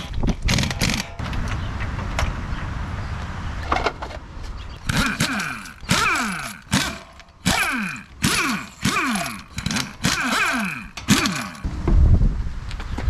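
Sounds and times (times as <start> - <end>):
pneumatic impact wrench bursts: 4.7 - 11.7.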